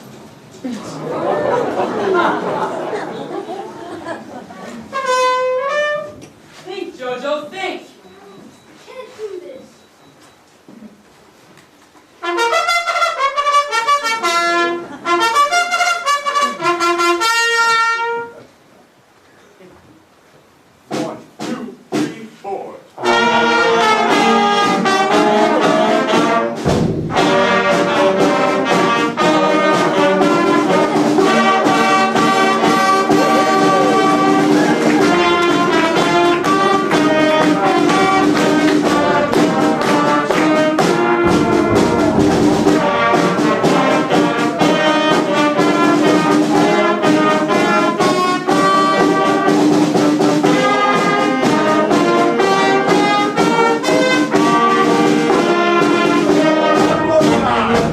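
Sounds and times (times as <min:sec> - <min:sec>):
brass band playing: 0:01.1 - 0:06.3, 0:12.2 - 0:18.5, 0:23.0 - 0:57.9
percussive beat: 0:25.6 - 0:47.3.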